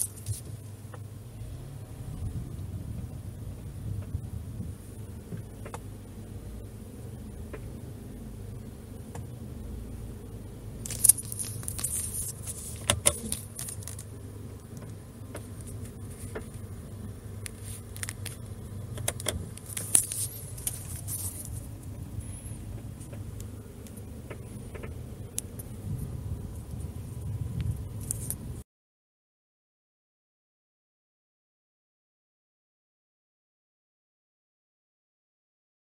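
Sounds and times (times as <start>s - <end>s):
low steady hum: 0.0s - 28.6s
tripod clicks and creaks: 10.8s - 14.1s, 17.5s - 21.6s.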